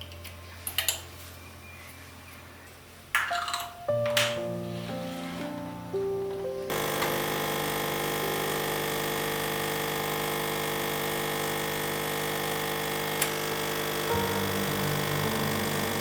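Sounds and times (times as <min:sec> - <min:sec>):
coffee machine motor humming: 0:06.7 - 0:16.0.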